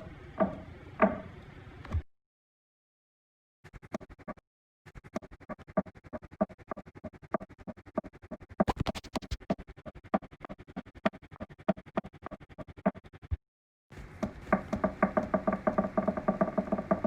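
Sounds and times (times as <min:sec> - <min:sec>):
knocking: 0:14.2 - 0:17.0.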